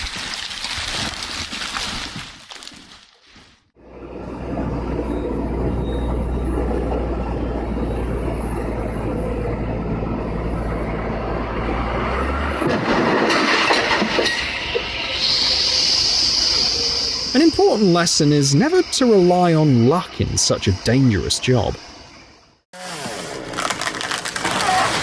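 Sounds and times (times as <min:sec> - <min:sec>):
machine rumble with rattling: 0:03.8 - 0:11.2.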